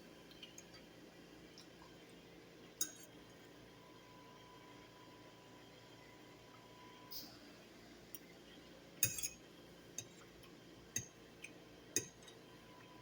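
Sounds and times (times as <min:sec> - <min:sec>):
cutlery clinking on a plate: 0:09.0 - 0:09.4.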